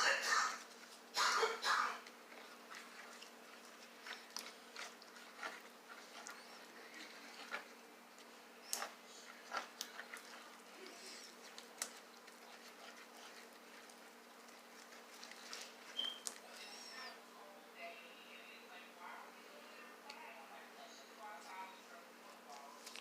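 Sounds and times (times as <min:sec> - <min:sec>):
soft slime squelches: 0:02.0 - 0:17.2.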